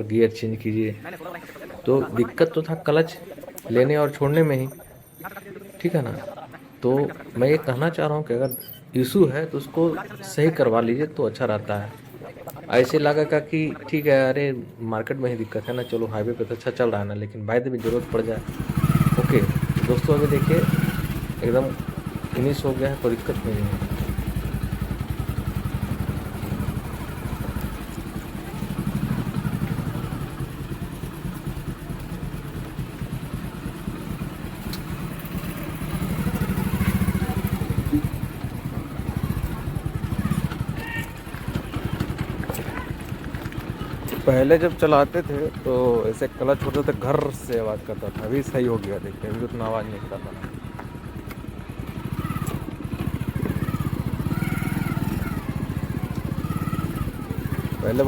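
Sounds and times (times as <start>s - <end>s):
motorcycle engine revving: 17.8s - 58.0s.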